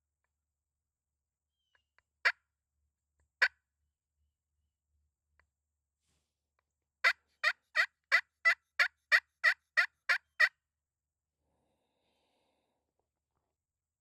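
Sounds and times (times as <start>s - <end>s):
turkey yelps: 7.0s - 10.5s.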